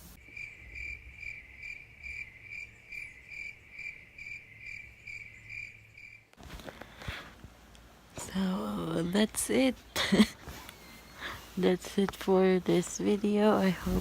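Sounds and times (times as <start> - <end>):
high cricket-like chirping: 0.2 - 6.4.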